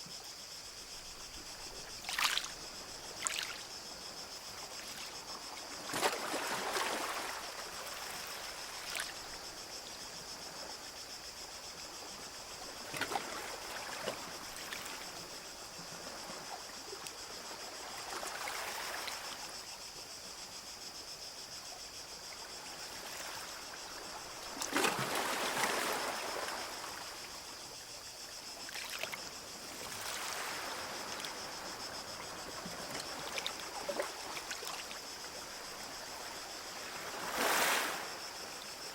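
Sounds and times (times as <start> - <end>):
small waves washing onto beach: 28.7 - 38.9.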